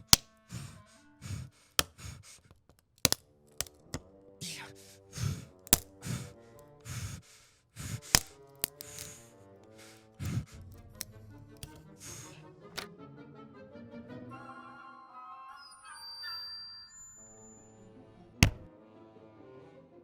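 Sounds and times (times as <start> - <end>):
film score music with held notes: 9.0 - 20.0
sharp clicks and knocks: 18.4 - 18.7.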